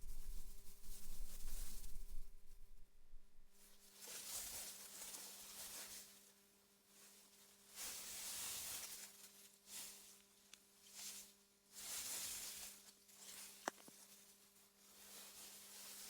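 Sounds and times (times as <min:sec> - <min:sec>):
faint low hum: 0:00.0 - 0:03.8
wind through grass: 0:00.0 - 0:03.8.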